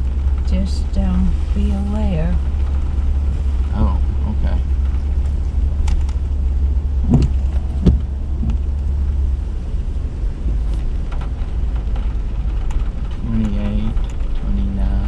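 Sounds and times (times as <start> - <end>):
vehicle rumble from inside: 0.0 - 15.0
brief knocks: 7.0 - 8.6.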